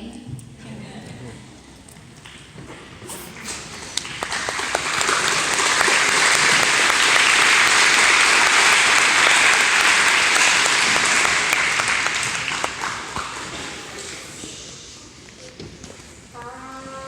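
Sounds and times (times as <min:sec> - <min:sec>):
audience applauding: 0:03.1 - 0:14.2.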